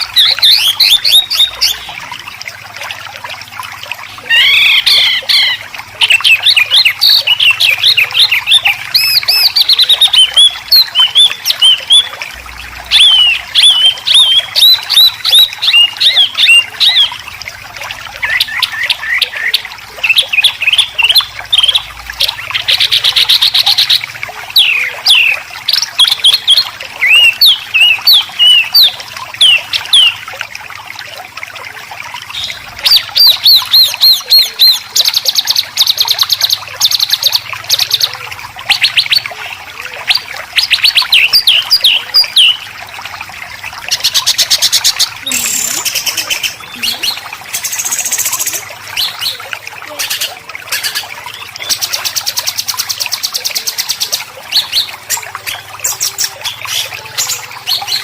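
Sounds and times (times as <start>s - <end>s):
songbird singing: 4.1s - 17.3s, 18.1s - 30.3s, 32.3s - 42.8s, 43.9s - 58.0s.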